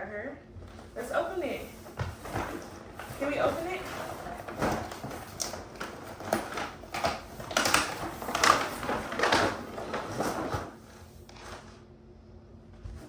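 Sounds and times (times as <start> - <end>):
packaging rustling and tearing: 1.7 - 11.7.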